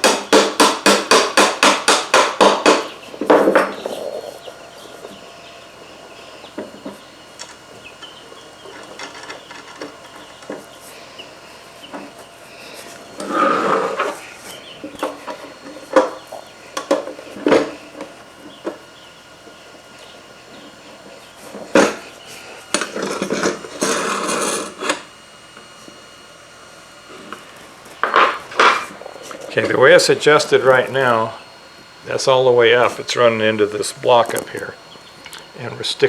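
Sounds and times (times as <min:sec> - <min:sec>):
sharp knocks: 0:00.0 - 0:03.9.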